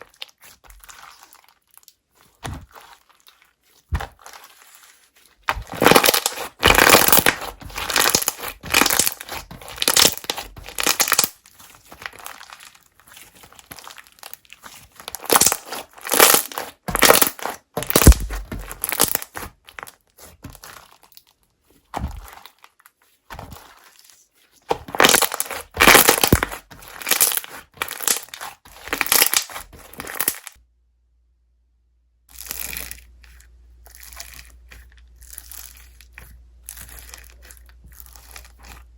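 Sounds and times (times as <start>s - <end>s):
slime crackling when squeezed: 4.2s - 19.9s, 24.8s - 30.5s.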